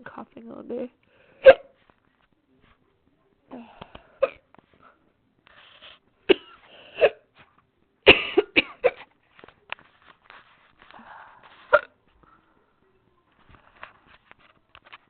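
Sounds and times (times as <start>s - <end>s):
woman coughing: 6.3s - 7.3s, 8.0s - 9.1s.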